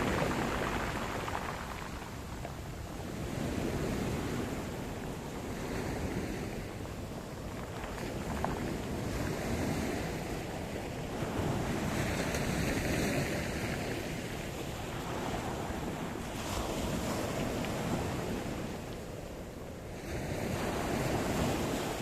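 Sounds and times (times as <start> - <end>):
waves breaking on shore: 0.0 - 22.0.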